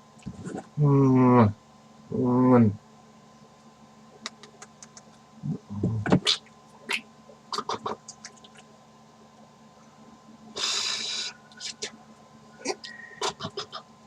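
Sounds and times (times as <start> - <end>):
person humming: 5.4 - 6.2, 12.6 - 13.8.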